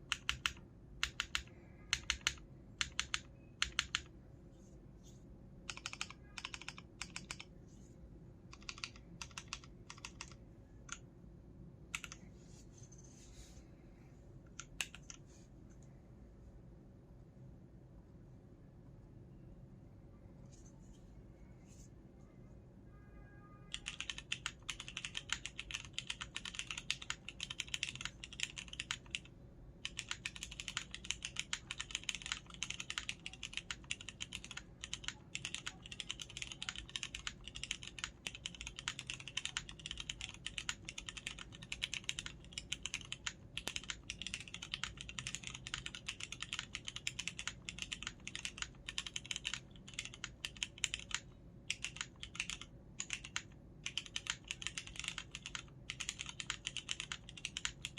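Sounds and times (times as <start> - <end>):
fast typing on mechanical keyboard: 0.0 - 4.1, 5.6 - 7.5, 8.5 - 11.0, 11.9 - 12.2, 14.6 - 15.2, 23.7 - 57.9.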